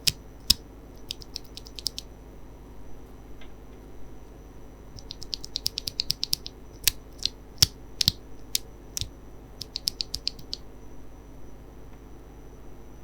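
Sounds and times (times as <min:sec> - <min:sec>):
mechanical keyboard typing: 0:00.0 - 0:02.0, 0:05.0 - 0:10.6.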